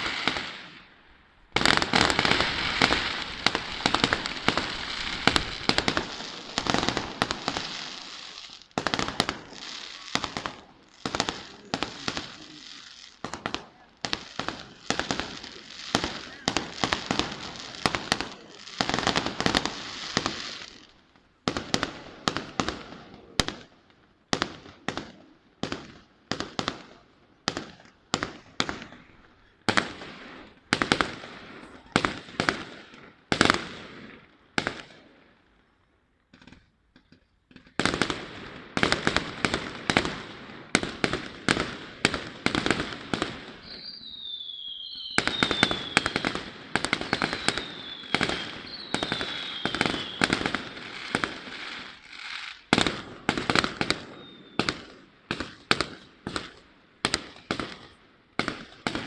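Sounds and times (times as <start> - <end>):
falling firework whistles: 0.0 - 1.0, 43.1 - 54.9.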